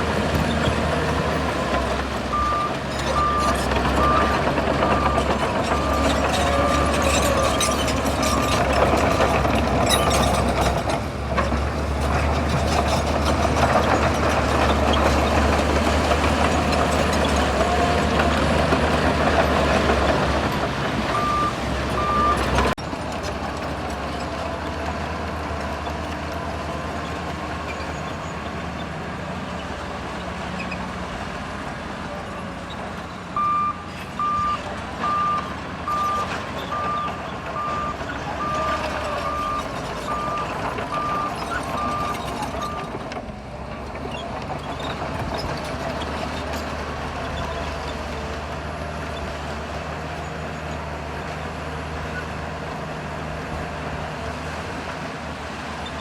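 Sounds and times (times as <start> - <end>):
bulldozer diesel engine under load: 0.0 - 56.0
reversing alarm beeping: 2.3 - 7.6, 21.1 - 22.6, 33.4 - 42.8.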